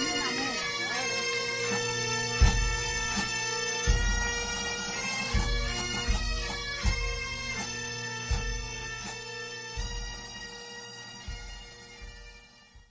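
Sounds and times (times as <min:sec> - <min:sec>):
bagpipe melody with drone: 0:00.0 - 0:12.9
bass drum beats: 0:02.1 - 0:10.4.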